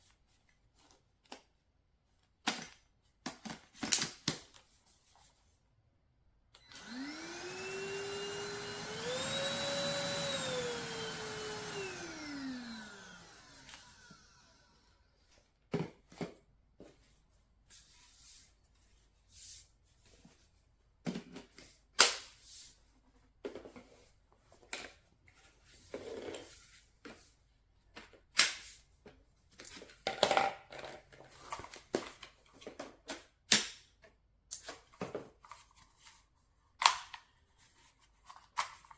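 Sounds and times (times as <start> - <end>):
vacuum cleaner motor whine: 6.6 - 15.2.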